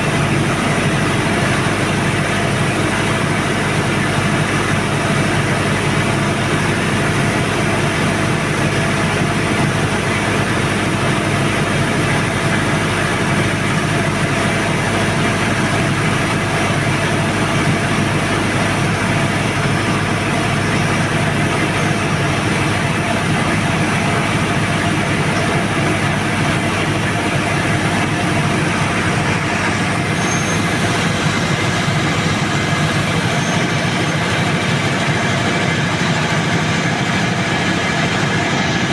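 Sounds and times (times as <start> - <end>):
diesel generator running: 0.0 - 38.9.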